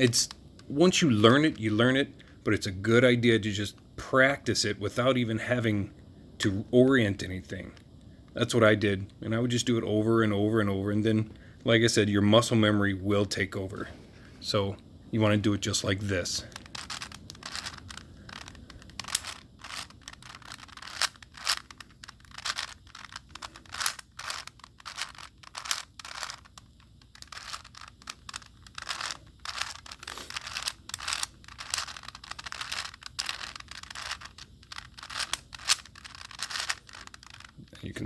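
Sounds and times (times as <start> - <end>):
puzzle cube clicking and scraping: 15.6 - 38.0.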